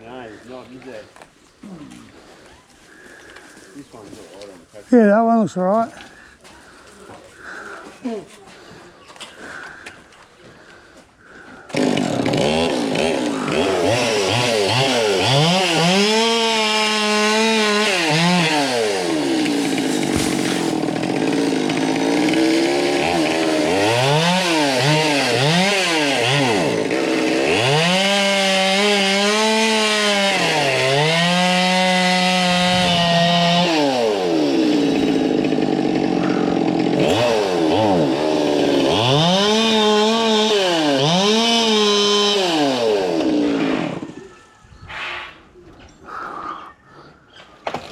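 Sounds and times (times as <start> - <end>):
chainsaw cutting wood: 11.6 - 44.3.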